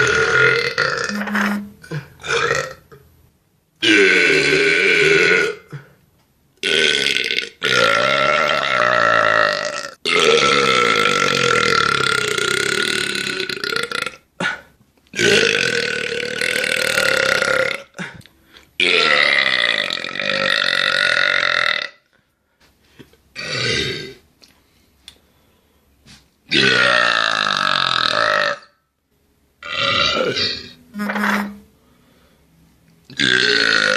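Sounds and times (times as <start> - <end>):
men belching: 0.0 - 2.8, 6.6 - 14.6, 15.2 - 18.0, 18.8 - 22.0, 26.5 - 28.7, 29.6 - 31.5, 33.2 - 33.9.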